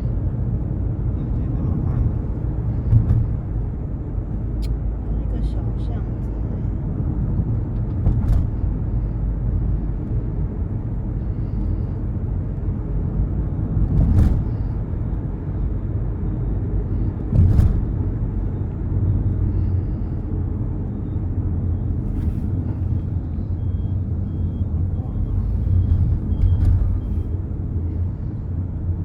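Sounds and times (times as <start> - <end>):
car cabin road rumble: 0.0 - 29.0.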